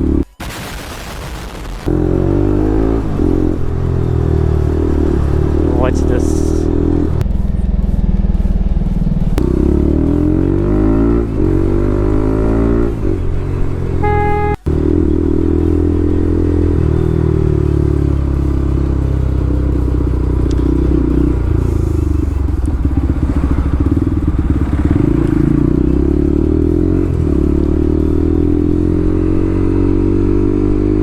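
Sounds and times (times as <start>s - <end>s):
motorcycle engine accelerating: 1.9s - 31.0s
horn beep: 14.0s - 14.8s.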